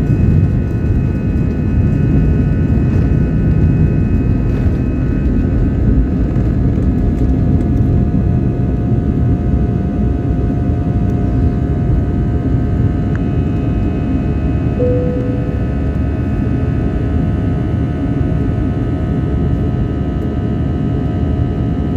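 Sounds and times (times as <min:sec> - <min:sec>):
airliner engine rumble in cabin: 0:00.0 - 0:21.9.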